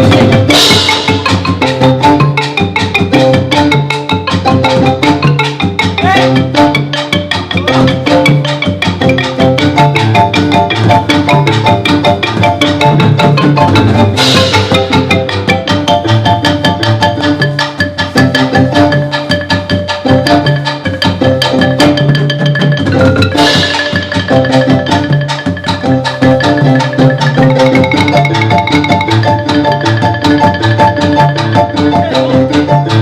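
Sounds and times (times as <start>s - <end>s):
bright high percussion: 0.0s - 33.0s
percussion: 0.0s - 33.0s
xylophone running notes: 0.0s - 33.0s.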